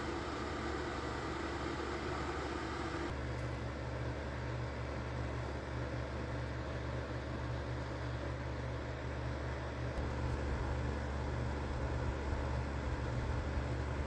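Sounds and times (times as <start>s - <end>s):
machine hum with rushing noise: 0.0s - 4.4s, 8.4s - 14.0s.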